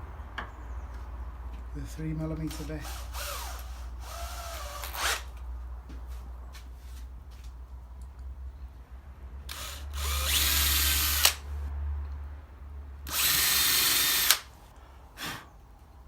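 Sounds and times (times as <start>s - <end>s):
electric drill whining: 2.5s - 5.3s, 9.5s - 11.4s, 13.1s - 14.5s
drill click: 2.5s - 5.4s, 9.5s - 11.4s, 13.1s - 14.5s.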